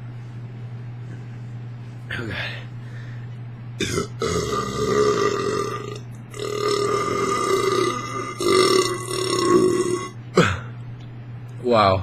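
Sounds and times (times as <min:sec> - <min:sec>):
man burping: 0:03.8 - 0:10.7.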